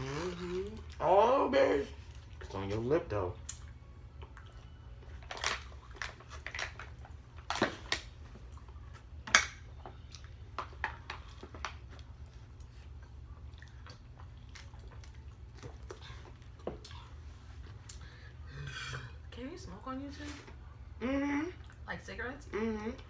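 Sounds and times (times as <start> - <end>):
chewing and mouth smacks: 3.4 - 4.8, 9.8 - 17.0.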